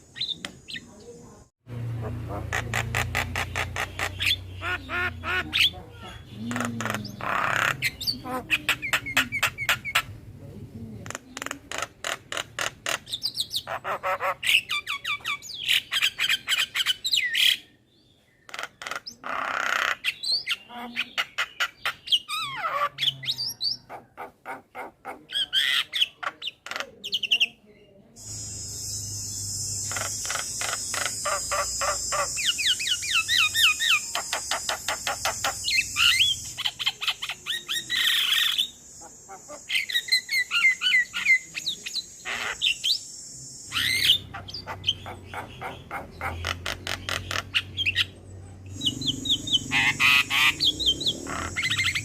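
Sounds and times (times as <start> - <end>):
myna singing chatter and whistles: 2.5 - 10.1, 25.6 - 52.0
steady high hiss: 28.2 - 44.1.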